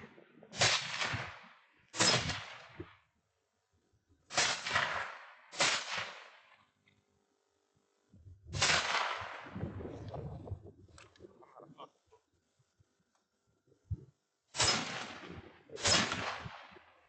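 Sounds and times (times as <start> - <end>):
rifle shots: 0.6 - 2.8, 4.3 - 6.5, 8.5 - 9.6, 14.6 - 16.9.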